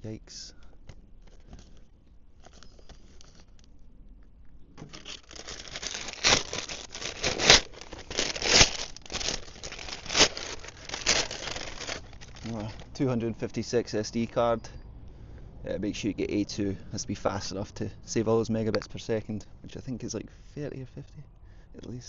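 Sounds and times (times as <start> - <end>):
packaging crinkling and tearing: 1.2 - 3.7, 4.8 - 13.0.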